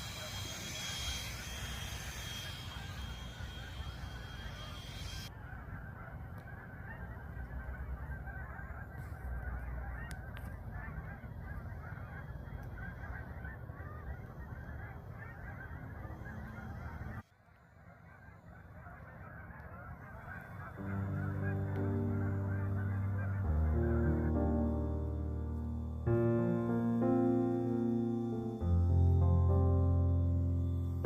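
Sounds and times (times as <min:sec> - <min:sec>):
hiss: 0:00.0 - 0:05.3
flock of birds calling: 0:00.0 - 0:29.6.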